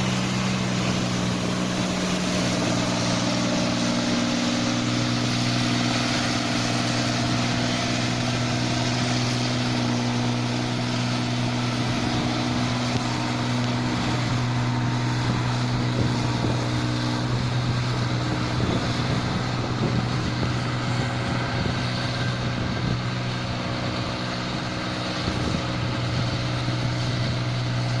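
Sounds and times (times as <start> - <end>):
combine harvester engine drone: 0.0 - 28.0.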